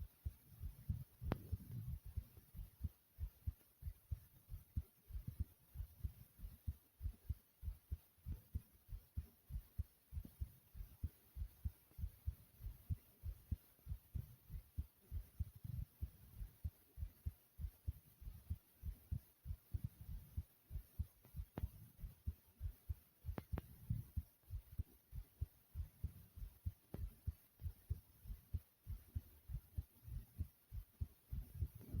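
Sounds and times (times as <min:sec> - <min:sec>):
heartbeat thumping: 0:00.0 - 0:32.0
faint clicks: 0:23.3 - 0:23.8.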